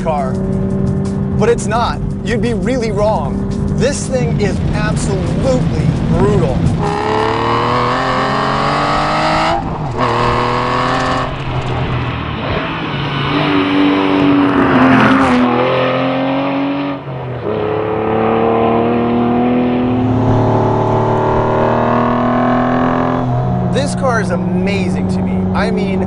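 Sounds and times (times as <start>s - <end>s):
car engine accelerating hard: 0.0s - 26.0s.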